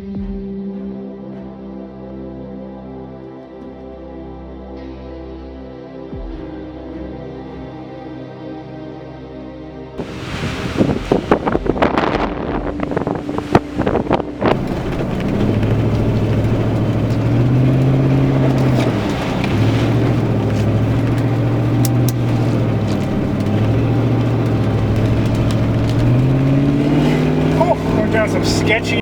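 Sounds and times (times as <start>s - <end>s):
car engine accelerating: 10.0s - 29.0s.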